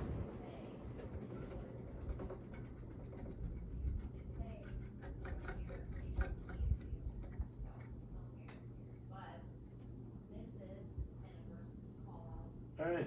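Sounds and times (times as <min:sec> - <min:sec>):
ceiling fan humming: 0:00.0 - 0:13.0
faint ticking and rubbing: 0:01.0 - 0:08.2.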